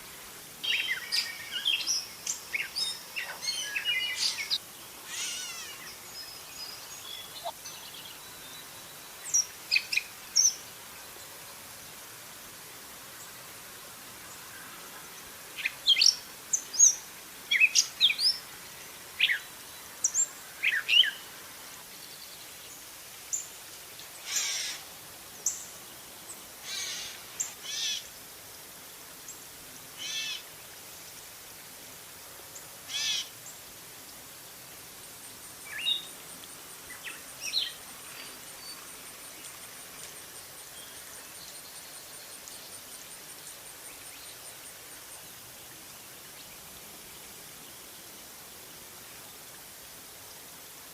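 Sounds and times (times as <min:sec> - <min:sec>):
background hiss: 0:00.0 - 0:50.9
catbird mewing calls: 0:05.1 - 0:05.8.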